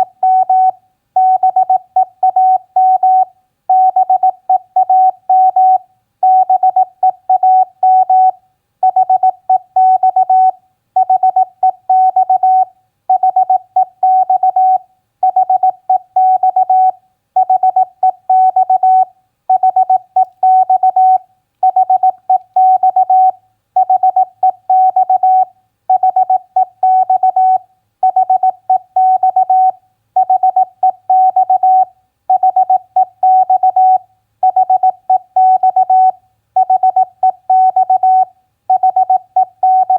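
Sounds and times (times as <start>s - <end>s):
morse code beeps: 8.9s - 39.9s.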